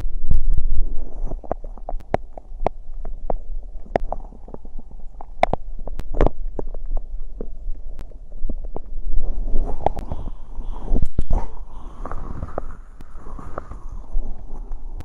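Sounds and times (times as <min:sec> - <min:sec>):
stomach gurgling: 0:00.0 - 0:15.0.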